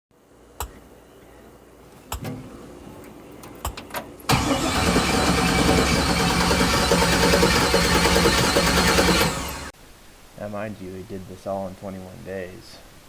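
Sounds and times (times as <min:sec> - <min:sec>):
car engine running loudly: 0:04.3 - 0:09.7.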